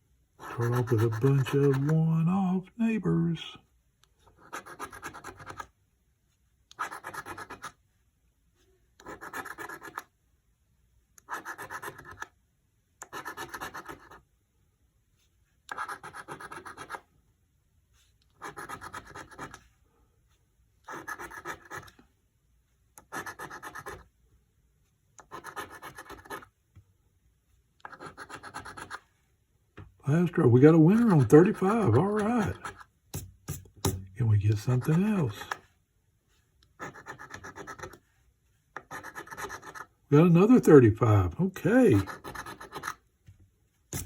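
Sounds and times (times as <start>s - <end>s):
scratching lottery ticket coating: 0.4s - 2.6s, 20.8s - 22.0s, 23.1s - 24.1s, 25.2s - 26.5s, 27.8s - 29.1s, 30.2s - 33.0s, 33.9s - 35.6s, 36.7s - 38.0s, 38.8s - 43.0s.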